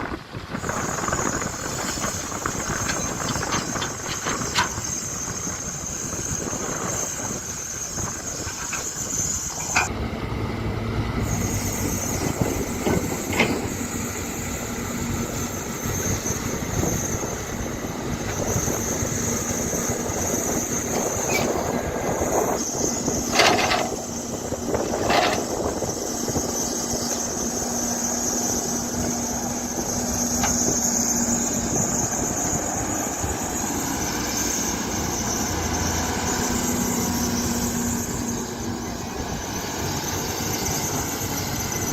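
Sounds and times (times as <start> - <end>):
excavator engine running: 0.0 - 41.9
high-pitched squeal: 11.2 - 41.9.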